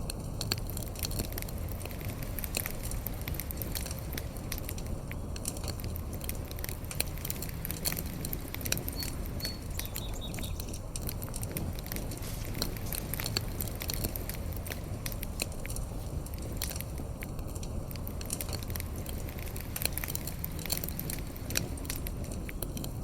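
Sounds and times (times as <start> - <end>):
fire crackling and popping: 0.0 - 23.0
low rumble of flames: 0.0 - 23.0
faint high whistles: 8.8 - 10.6.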